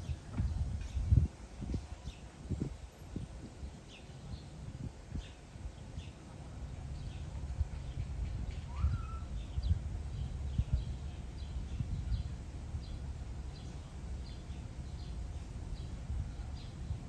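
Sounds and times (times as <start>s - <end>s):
steady low rumble: 0.0s - 17.0s
small birds chirping: 3.5s - 17.0s
rising whistled bird call: 8.7s - 9.5s.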